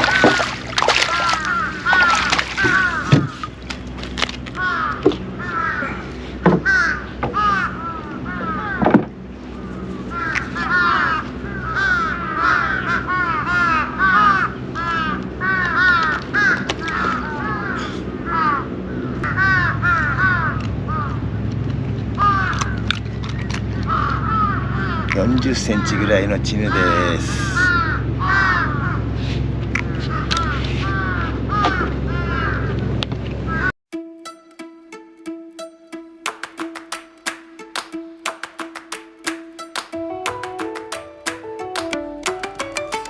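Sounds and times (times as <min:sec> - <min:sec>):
crows cawing: 0:00.0 - 0:09.0, 0:09.6 - 0:21.2, 0:22.2 - 0:22.9, 0:23.8 - 0:29.3, 0:29.9 - 0:32.8, 0:33.5 - 0:33.7
low steady hum: 0:00.0 - 0:33.6
sharp knocks: 0:06.4 - 0:07.4.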